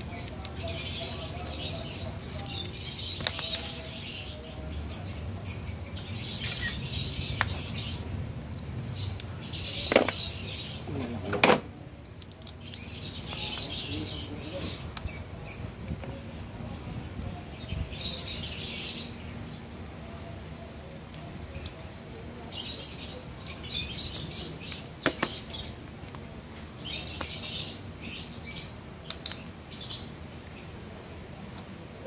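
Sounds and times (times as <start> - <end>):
birds chirping: 0.0 - 11.6, 12.2 - 16.2, 17.4 - 30.9.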